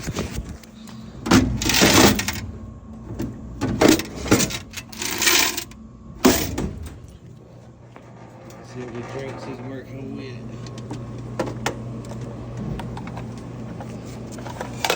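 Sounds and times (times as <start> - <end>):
coins jingling and clattering: 4.4 - 5.7.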